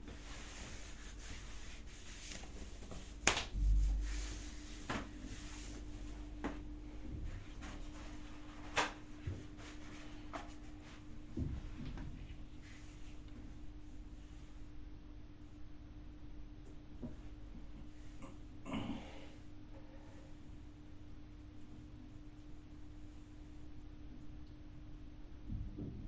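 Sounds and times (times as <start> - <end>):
clothing rustling: 0.0 - 6.2
faint steady hum: 0.0 - 26.0
low thump: 3.5 - 4.2.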